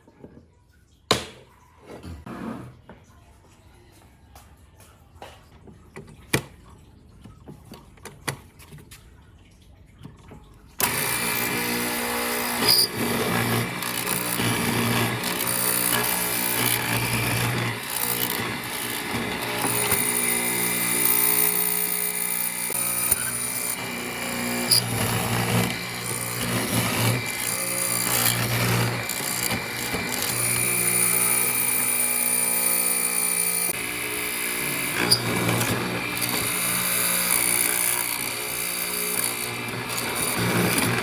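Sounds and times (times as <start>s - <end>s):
power tool running: 10.8s - 41.0s.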